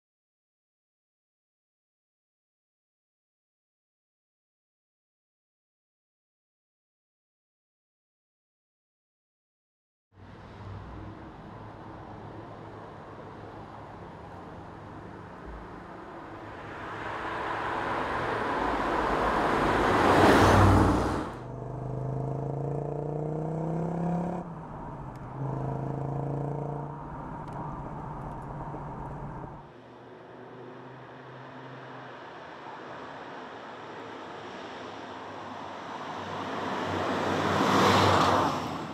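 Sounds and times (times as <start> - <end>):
car engine accelerating: 16.3 - 32.2.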